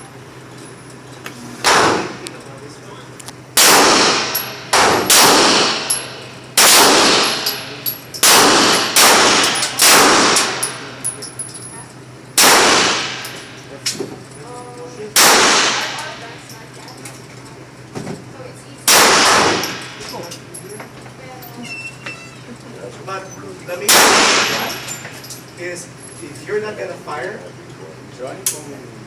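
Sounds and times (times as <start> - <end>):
pistol shots echoing: 1.6 - 2.2, 3.6 - 10.8, 12.4 - 13.4, 15.2 - 16.2, 18.9 - 20.0, 23.9 - 24.9.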